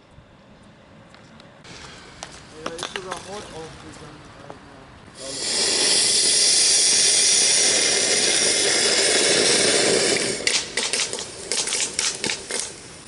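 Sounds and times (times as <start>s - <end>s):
firework fountain hissing: 1.6s - 3.0s, 5.1s - 13.0s
firework crackling: 1.6s - 3.8s, 5.2s - 13.0s.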